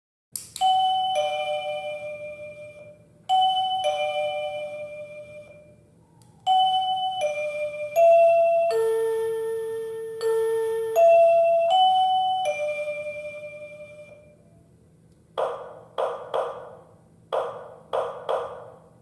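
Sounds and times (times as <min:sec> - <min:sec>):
electronic door chime ding-dong: 0:00.6 - 0:05.8, 0:06.5 - 0:14.5.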